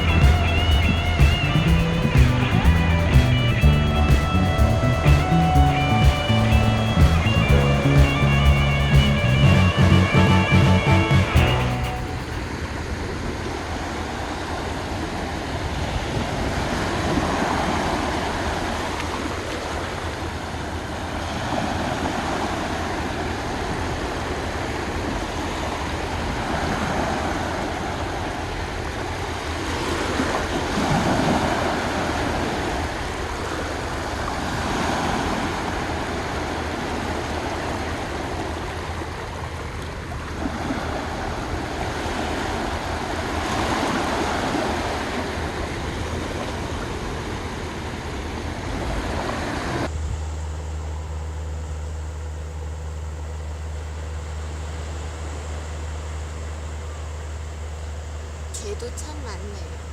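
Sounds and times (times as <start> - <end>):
sea waves washing onto beach: 0.0 - 8.2, 12.0 - 49.9
steady low rumble: 0.0 - 12.7.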